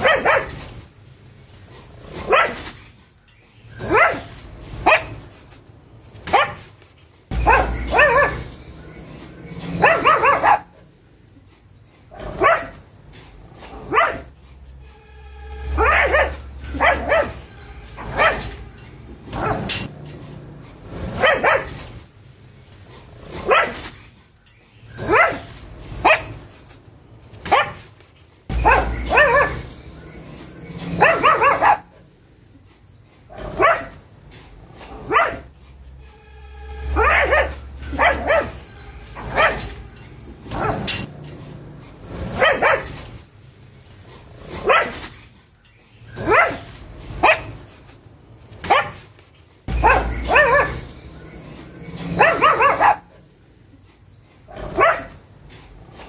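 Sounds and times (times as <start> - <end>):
dog barking: 0.0 - 0.6, 2.2 - 2.7, 3.8 - 5.3, 6.2 - 6.7, 7.3 - 9.0, 9.6 - 10.8, 12.1 - 12.8, 13.7 - 14.3, 15.7 - 18.6, 19.3 - 19.9, 21.0 - 21.8, 23.4 - 23.9, 25.0 - 26.4, 27.4 - 27.9, 28.5 - 30.2, 30.8 - 32.1, 33.3 - 34.0, 34.9 - 35.5, 36.8 - 39.8, 40.4 - 41.1, 42.3 - 43.0, 44.6 - 45.0, 46.2 - 47.6, 48.6 - 49.0, 49.7 - 51.4, 52.0 - 53.1, 54.5 - 55.2.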